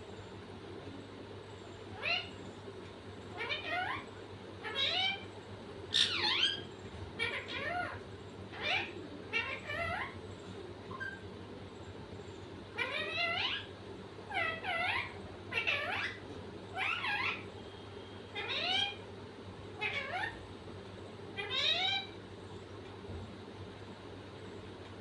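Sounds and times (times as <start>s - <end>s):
pet mewing: 3.3s - 5.3s, 5.9s - 10.3s, 12.8s - 13.7s, 14.3s - 16.2s, 16.8s - 17.5s, 18.4s - 19.0s, 19.8s - 20.5s, 21.3s - 22.2s.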